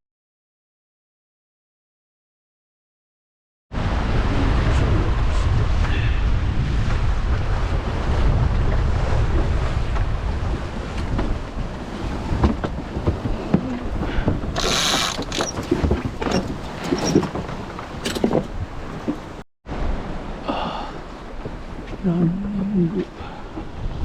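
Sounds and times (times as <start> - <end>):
wind buffeting microphone: 3.8 - 19.4, 21.0 - 24.0
sea noise: 3.8 - 24.0
mechanical clicks and knocks: 14.6 - 19.2.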